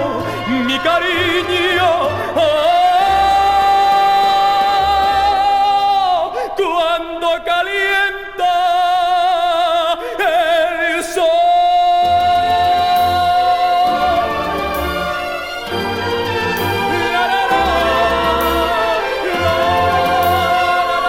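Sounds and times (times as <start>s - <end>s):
orchestra: 0.0s - 6.3s, 10.3s - 21.0s
man singing with vibrato: 0.0s - 21.0s.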